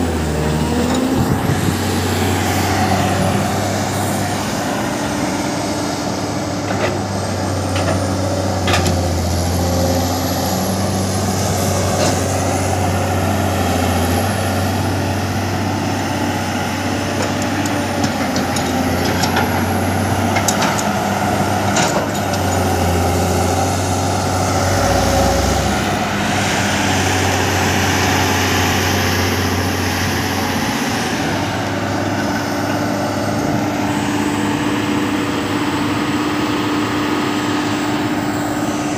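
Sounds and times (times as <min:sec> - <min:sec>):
diesel construction machinery running: 0:00.0 - 0:38.9.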